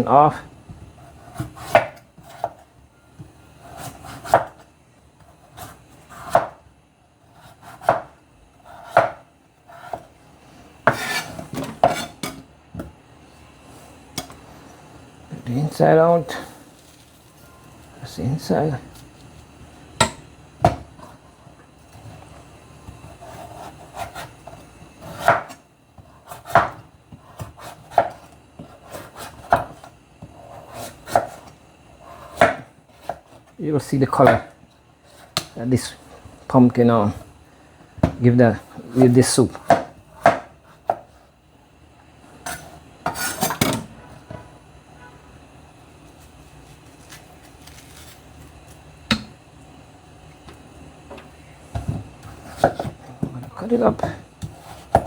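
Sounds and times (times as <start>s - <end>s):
knife cutting pumpkin skin: 1.0s - 2.6s, 3.6s - 4.6s, 46.6s - 49.3s
knife chopping onto cutting board: 1.3s - 2.6s, 3.8s - 4.6s, 5.6s - 6.6s, 7.4s - 8.2s, 8.8s - 10.1s, 10.8s - 12.9s, 25.0s - 25.6s, 26.3s - 29.8s, 32.3s - 33.3s, 38.8s - 41.1s, 49.1s - 49.3s, 51.7s - 55.0s.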